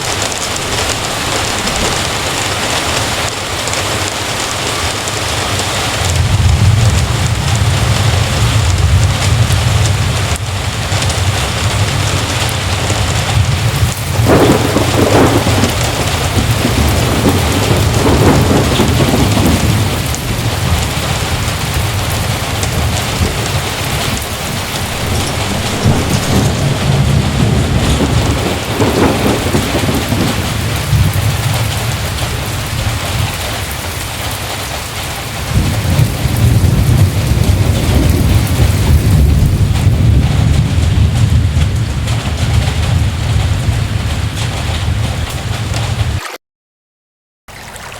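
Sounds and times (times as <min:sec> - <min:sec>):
thunder rumbling: 0:00.0 - 0:46.2
heavy rain: 0:00.0 - 0:46.4, 0:47.5 - 0:47.9.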